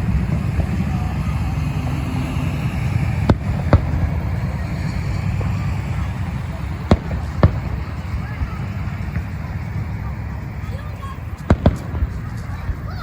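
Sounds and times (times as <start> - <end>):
fireworks bangs: 0.0 - 13.0
steady low rumble: 0.0 - 13.0
voices: 0.0 - 13.0.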